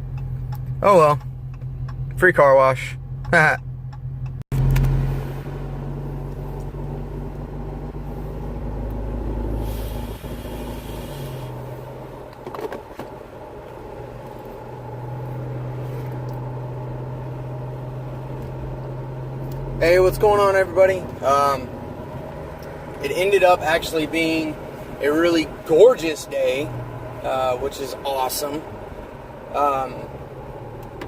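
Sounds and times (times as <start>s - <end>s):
car engine drone: 0.0s - 31.0s
road noise: 0.0s - 31.0s
short hiss: 9.5s - 11.8s.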